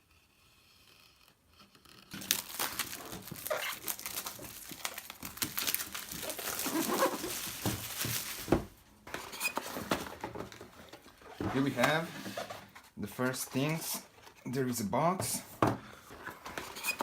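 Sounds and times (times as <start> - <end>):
packaging crinkling and rustling: 2.1 - 12.9.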